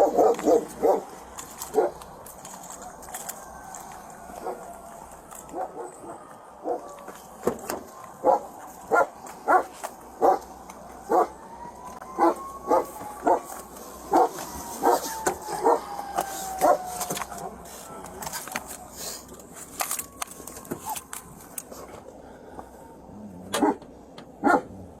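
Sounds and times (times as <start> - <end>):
dog barking: 0.0 - 1.1, 1.7 - 2.0, 4.4 - 4.7, 5.5 - 6.9, 8.2 - 10.4, 11.1 - 11.4, 12.2 - 13.5, 14.1 - 15.9, 16.6 - 17.6, 23.5 - 23.8, 24.4 - 24.8.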